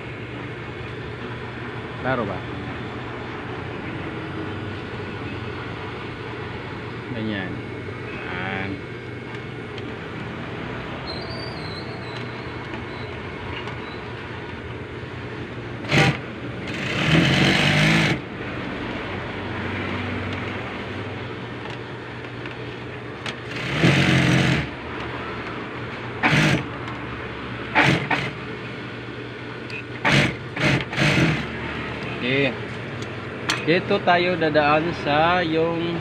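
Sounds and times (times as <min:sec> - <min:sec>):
motor hum: 0:00.0 - 0:33.7
sewing machine stitching: 0:15.8 - 0:18.2, 0:23.5 - 0:24.7, 0:26.2 - 0:26.7, 0:27.7 - 0:28.4, 0:30.0 - 0:31.5.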